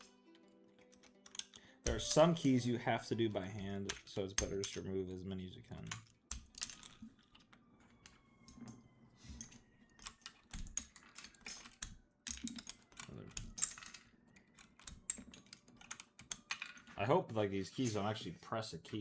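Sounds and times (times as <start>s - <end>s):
plastic keycaps clicking: 0.8s - 2.6s, 9.4s - 16.9s.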